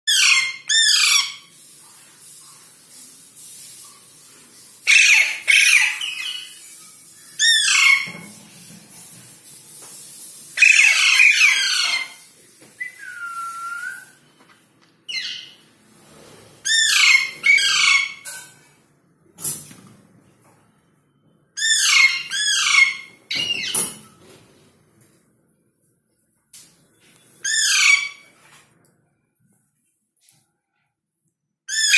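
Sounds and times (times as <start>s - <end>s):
parrots squawking: 0.1s - 1.5s, 4.8s - 6.7s, 7.4s - 8.2s, 10.6s - 14.2s, 15.1s - 15.6s, 16.6s - 18.4s, 21.6s - 24.0s, 27.4s - 28.4s, 31.7s - 31.9s.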